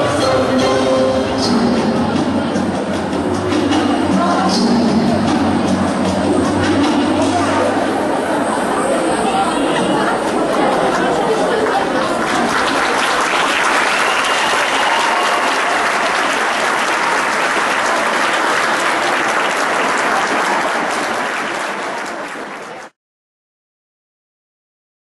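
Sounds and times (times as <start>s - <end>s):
audience applauding: 10.4s - 23.0s.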